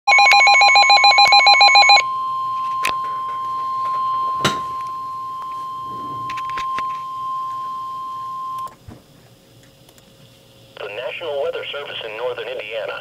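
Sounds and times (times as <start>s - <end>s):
fast pulsing electronic alarm: 0.1s - 8.7s
steady warning tone: 0.1s - 8.7s.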